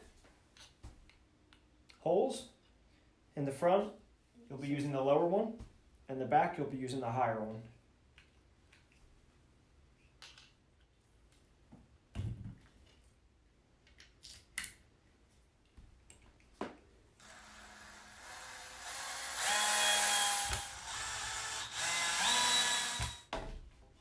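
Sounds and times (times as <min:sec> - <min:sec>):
power drill running: 0:17.2 - 0:23.3.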